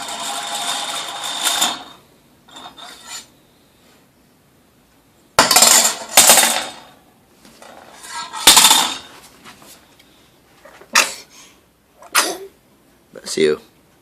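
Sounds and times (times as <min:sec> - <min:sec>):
loud sneeze: 0:12.0 - 0:12.6.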